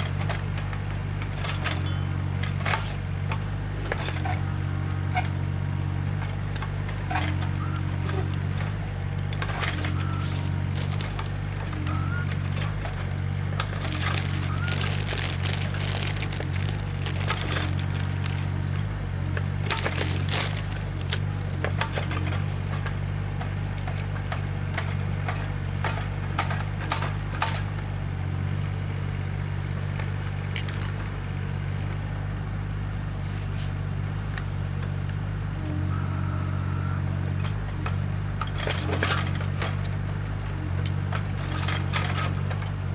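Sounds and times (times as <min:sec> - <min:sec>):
branches cracking and crunching: 0:06.1 - 0:25.4.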